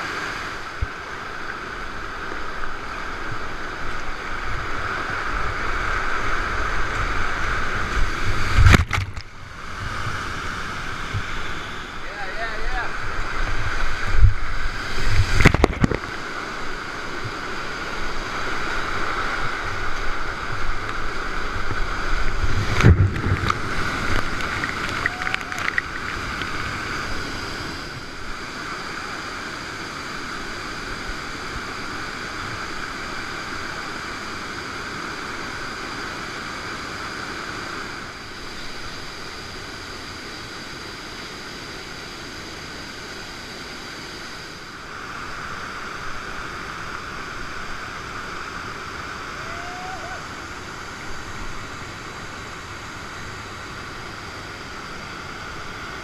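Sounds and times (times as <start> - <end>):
whitewater river rushing: 0.0 - 56.0.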